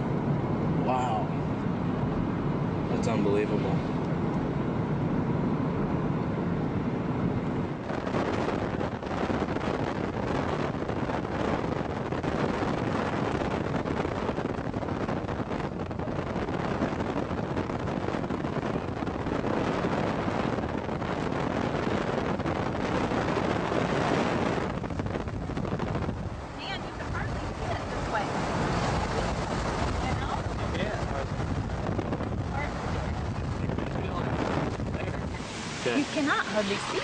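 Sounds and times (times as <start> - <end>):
storm wind buffeting microphone: 6.5 - 37.0.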